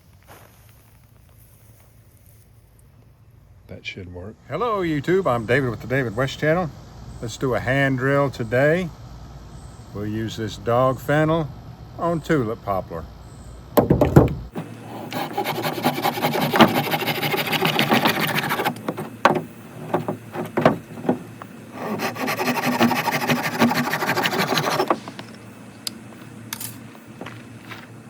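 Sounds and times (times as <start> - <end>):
knocks: 13.8 - 14.6, 17.6 - 21.3
fast wooden rubbing of hand drill: 13.8 - 25.2.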